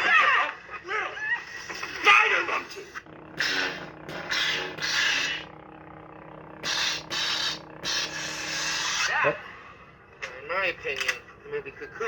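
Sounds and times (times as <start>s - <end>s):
lightsaber hum: 2.7s - 10.1s.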